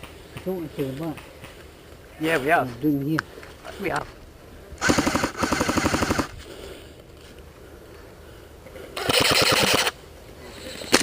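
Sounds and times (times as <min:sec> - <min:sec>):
airsoft gun firing bursts: 0:04.8 - 0:06.3, 0:09.0 - 0:10.0.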